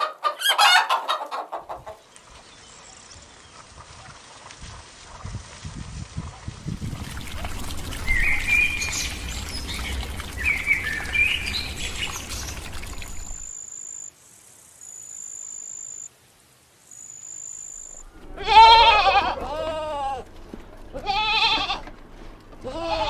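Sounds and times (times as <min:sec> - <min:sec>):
outdoor background hiss: 0:01.0 - 0:23.0
birds chirping: 0:06.8 - 0:13.5.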